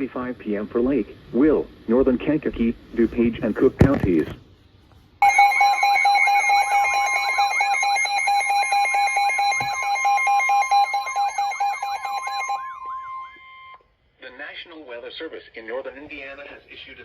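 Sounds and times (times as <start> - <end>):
harsh two-tone alarm: 5.2 - 13.8
warbling tone: 10.0 - 13.5.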